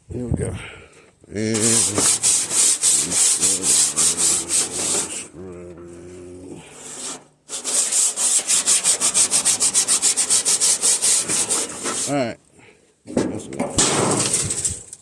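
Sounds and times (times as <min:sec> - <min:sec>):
rhythmic rubbing strokes: 0:01.5 - 0:06.0, 0:06.7 - 0:12.2.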